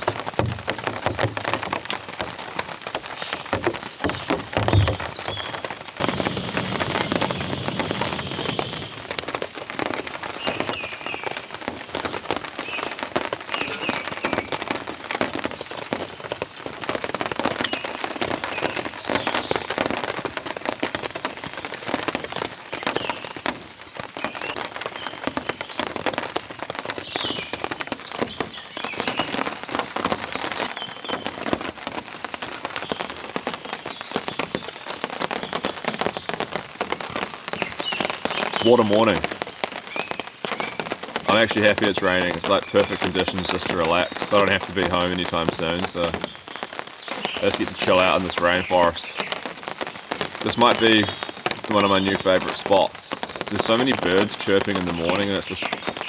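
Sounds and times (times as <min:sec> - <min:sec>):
heavy rain falling: 0:00.0 - 0:17.4, 0:35.1 - 0:56.0
birds chirping: 0:04.0 - 0:09.3.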